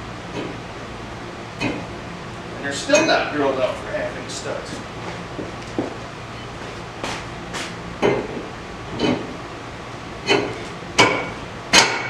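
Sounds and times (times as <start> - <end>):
hammer striking metal: 10.3 - 12.0.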